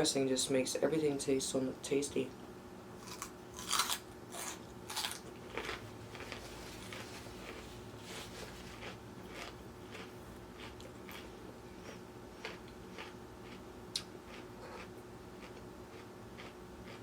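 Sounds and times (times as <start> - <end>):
chewing crunchy salad: 3.0 - 17.0.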